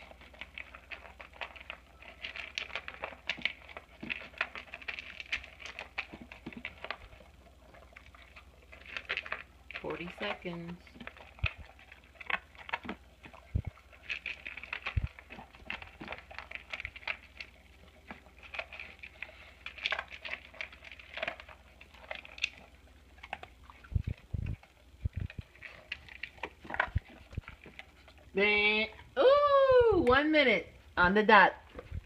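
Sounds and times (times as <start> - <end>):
dog crunching dry food: 0.0 - 29.2, 30.7 - 32.0.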